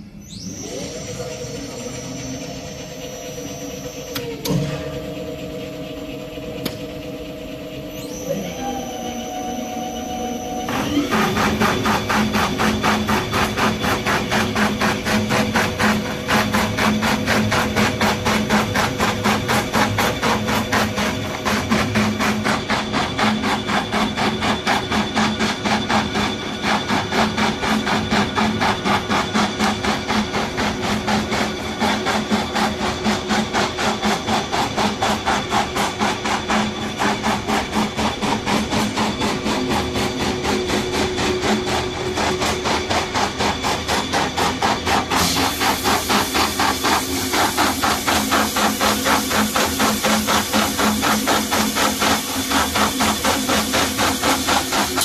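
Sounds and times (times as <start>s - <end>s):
machine hum: 0.0s - 55.0s
saw cutting paper logs: 10.7s - 55.0s
hiss: 44.2s - 55.0s.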